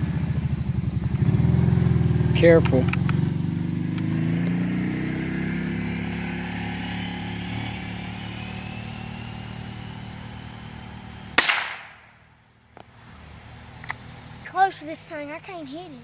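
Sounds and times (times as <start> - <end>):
vehicle engine humming: 0.0 - 16.0
rifle shot: 11.4 - 12.2.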